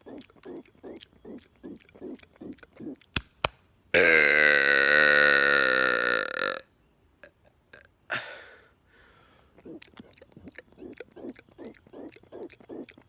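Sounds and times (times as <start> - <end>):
long loud burp: 4.0 - 6.7.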